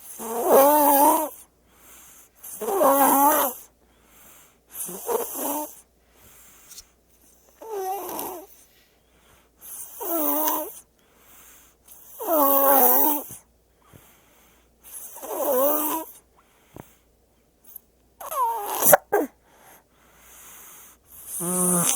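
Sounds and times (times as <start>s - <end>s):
baby snoring: 0.0s - 1.4s, 2.4s - 3.7s, 4.8s - 5.8s, 7.6s - 8.5s, 9.6s - 10.8s, 12.0s - 13.4s, 14.9s - 16.2s, 18.2s - 19.3s, 21.2s - 21.9s
faint breaths: 1.4s - 2.6s, 3.6s - 10.0s, 10.7s - 12.2s, 13.2s - 15.3s, 16.0s - 17.9s, 19.2s - 21.9s.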